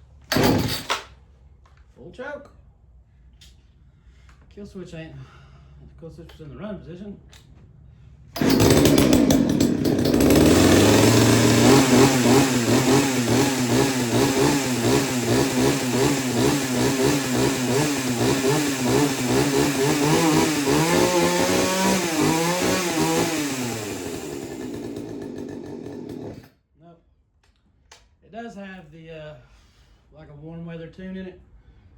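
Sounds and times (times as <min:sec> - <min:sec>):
chainsaw engine running unevenly: 0:00.3 - 0:01.0, 0:08.4 - 0:26.5.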